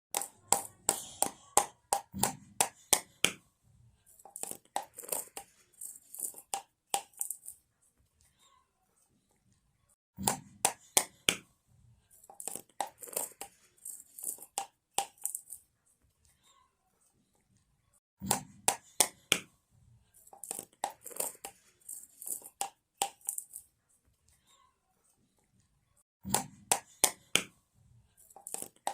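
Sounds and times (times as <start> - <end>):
container rattling: 4.2 - 7.6, 12.2 - 15.6, 20.2 - 23.6, 28.2 - 28.9.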